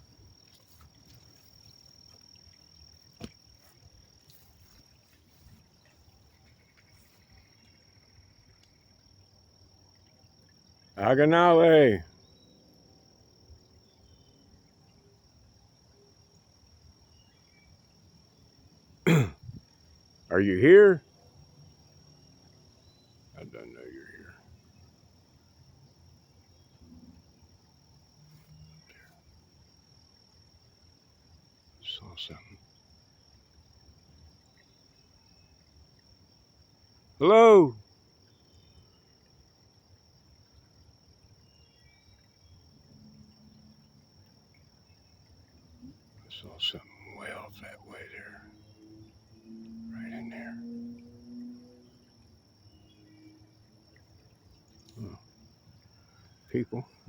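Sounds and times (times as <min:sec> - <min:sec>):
crickets trilling: 0:00.0 - 0:57.0
loud voiced call: 0:37.2 - 0:37.8
high-pitched insect drone: 0:46.3 - 0:53.6.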